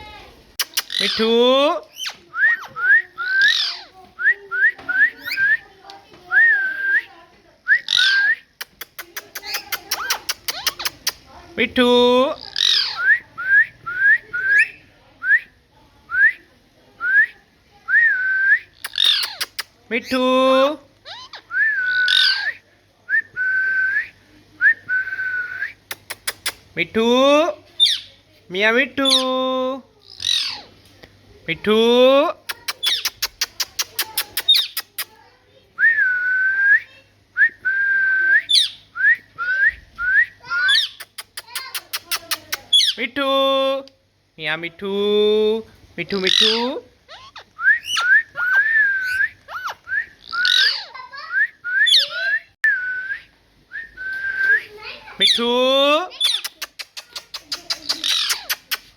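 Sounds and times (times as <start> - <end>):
parrot clicks: 8.6 - 11.3, 25.9 - 26.7, 56.2 - 58.9
parrot whistling: 46.3 - 55.4.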